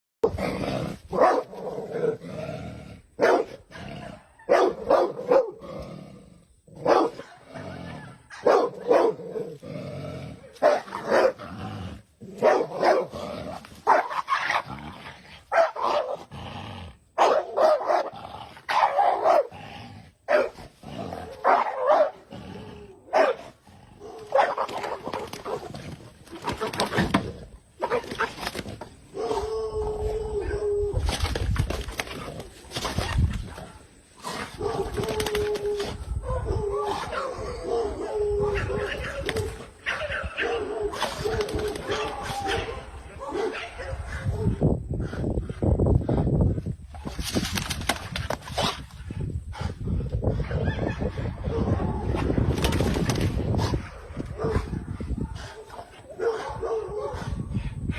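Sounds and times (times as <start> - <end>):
dog barking: 1.1 - 1.5, 3.2 - 3.6, 4.4 - 5.6, 6.8 - 9.2, 10.6 - 11.4, 12.4 - 13.1, 13.8 - 14.2, 15.5 - 16.2, 17.2 - 18.1, 18.7 - 19.5, 20.3 - 20.6, 21.4 - 22.2, 23.1 - 25.6, 39.8 - 44.5, 56.2 - 57.4
dog howling: 29.1 - 31.1, 34.6 - 39.4.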